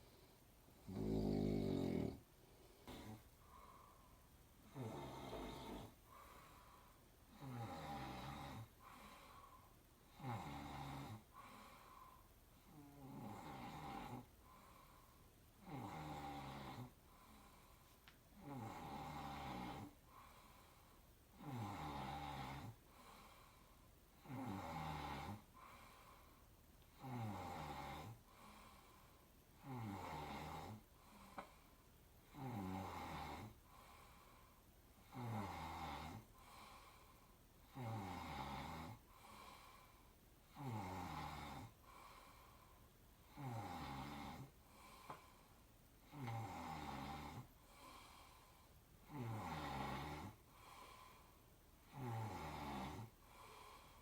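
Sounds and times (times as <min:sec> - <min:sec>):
person snoring: 0:00.8 - 0:03.8, 0:04.6 - 0:06.6, 0:07.3 - 0:09.4, 0:10.1 - 0:11.6, 0:12.7 - 0:14.3, 0:15.6 - 0:17.0, 0:18.4 - 0:20.0, 0:21.3 - 0:23.3, 0:24.2 - 0:25.5, 0:27.0 - 0:28.8, 0:29.6 - 0:31.5, 0:32.3 - 0:33.6, 0:35.0 - 0:42.4, 0:43.3 - 0:45.2, 0:46.0 - 0:51.2, 0:51.8 - 0:54.0.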